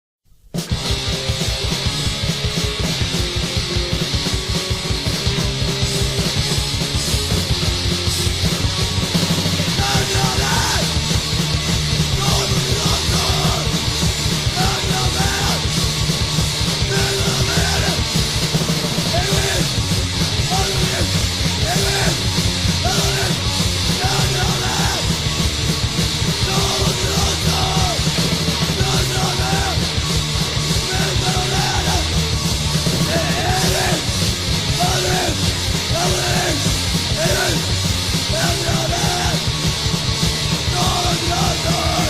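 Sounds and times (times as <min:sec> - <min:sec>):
punk band playing fast: 0:00.5 - 0:42.0
shouted vocals: 0:09.6 - 0:11.0, 0:12.1 - 0:15.8, 0:16.8 - 0:18.1, 0:19.0 - 0:19.8, 0:20.4 - 0:25.3, 0:26.3 - 0:30.0, 0:30.7 - 0:32.2, 0:33.0 - 0:39.5, 0:40.6 - 0:42.0.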